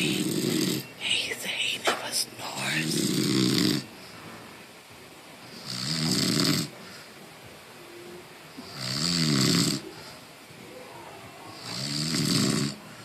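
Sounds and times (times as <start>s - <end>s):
person snoring: 0.0s - 0.9s, 2.5s - 3.9s, 11.6s - 12.8s.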